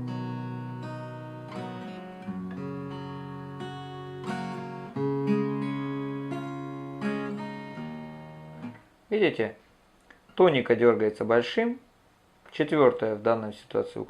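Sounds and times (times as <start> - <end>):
acoustic guitar fingerpicking and strumming: 0.0 - 8.9.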